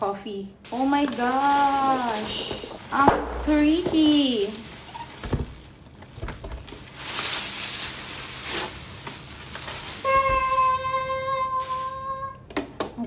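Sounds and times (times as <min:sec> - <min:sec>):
packaging rustling: 0:00.6 - 0:12.3.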